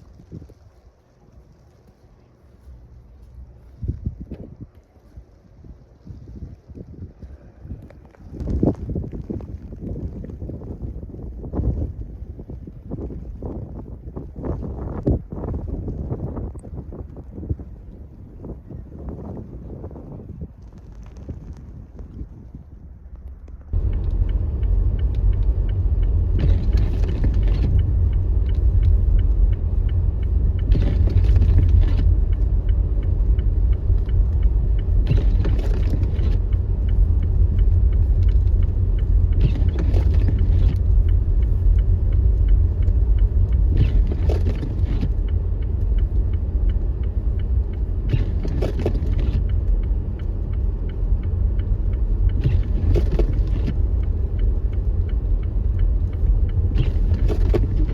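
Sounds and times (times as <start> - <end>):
tyres and engine rumble: 0.0 - 57.9
windshield wipers swishing: 23.7 - 57.9.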